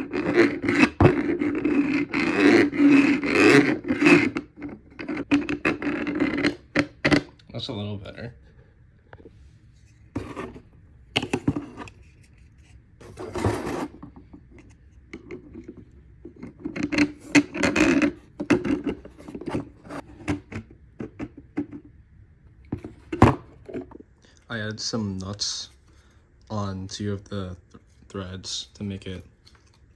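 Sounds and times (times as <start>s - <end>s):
rubbing and scraping: 0.0s - 7.3s, 8.3s - 21.8s.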